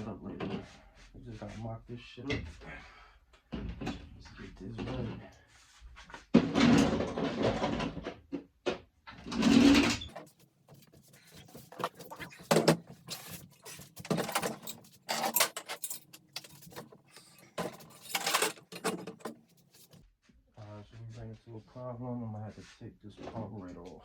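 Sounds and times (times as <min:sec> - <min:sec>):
tools and parts knocking and scraping: 0:09.3 - 0:20.0.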